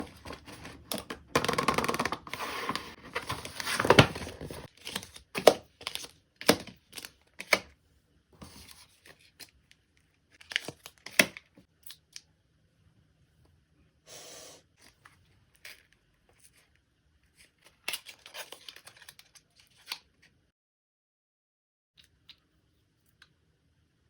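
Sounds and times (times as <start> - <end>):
packaging tearing and crinkling: 0.2 - 7.5.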